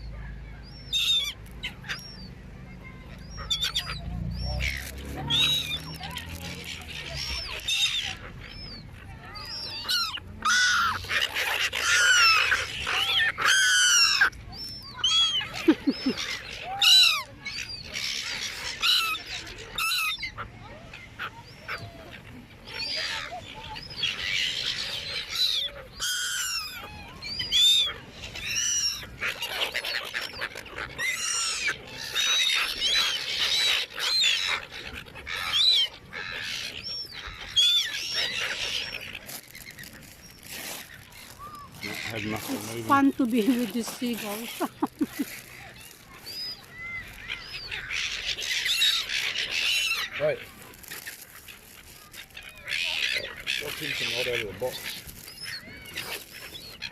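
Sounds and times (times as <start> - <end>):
seagulls squawking: 0.0 - 56.9.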